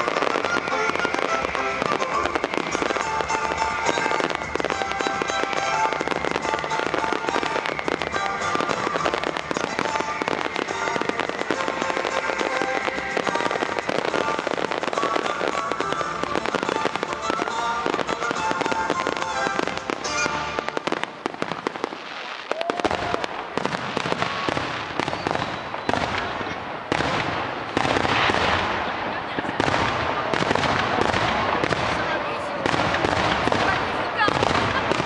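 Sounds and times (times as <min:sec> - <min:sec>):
loud music: 0:00.0 - 0:21.0
fireworks bursting and crackling: 0:00.0 - 0:35.0.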